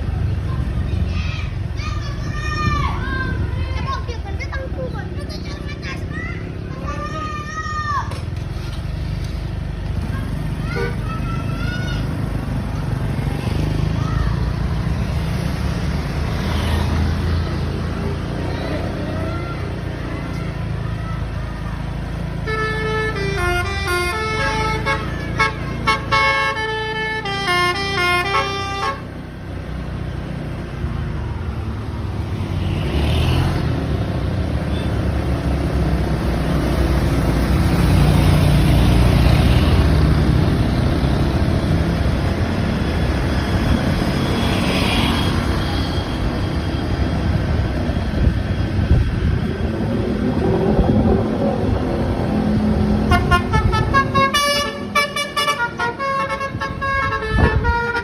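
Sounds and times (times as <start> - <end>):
bus engine rumbling: 0.0 - 58.0
bus horn playing a tune: 22.4 - 29.2, 53.0 - 58.0.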